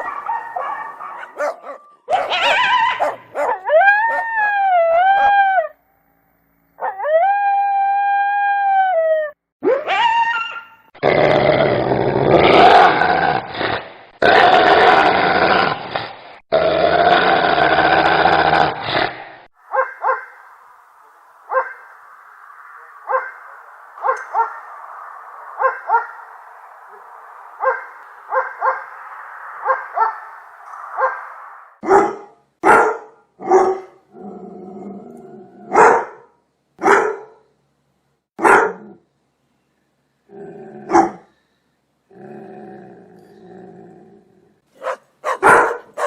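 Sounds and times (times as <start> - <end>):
dog barking: 0.0 - 4.2, 19.7 - 20.4, 21.5 - 21.9, 23.1 - 23.4, 24.0 - 24.7, 25.6 - 26.2, 27.6 - 28.9, 29.6 - 30.2, 31.0 - 34.0, 35.7 - 37.4, 38.4 - 38.9, 40.9 - 41.3, 44.8 - 46.0.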